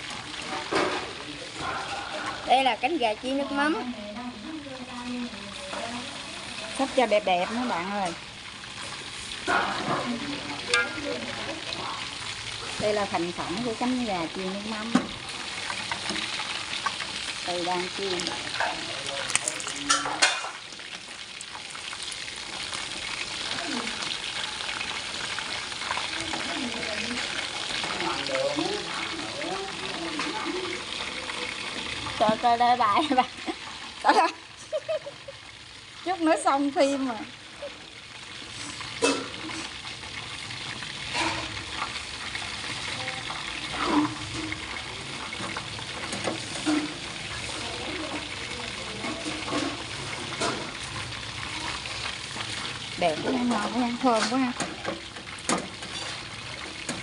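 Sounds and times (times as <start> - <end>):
chicken wings sizzling in a pan: 0.0 - 57.0
utensil clattering against pan: 18.3 - 20.6.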